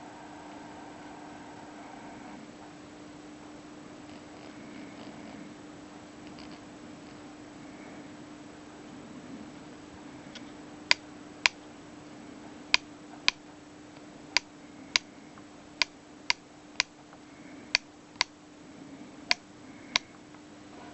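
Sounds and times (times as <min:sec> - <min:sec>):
blower motor humming: 0:00.0 - 0:03.0
sharp ticking clicks: 0:12.7 - 0:13.4, 0:17.7 - 0:18.3.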